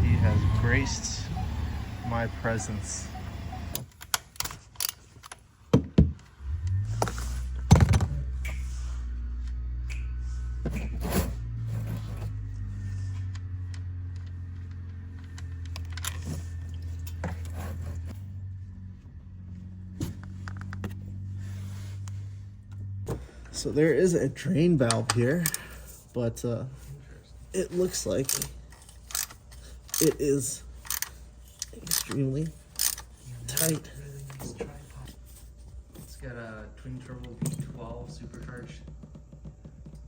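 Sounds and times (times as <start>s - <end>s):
steady low hum: 0.0s - 3.9s.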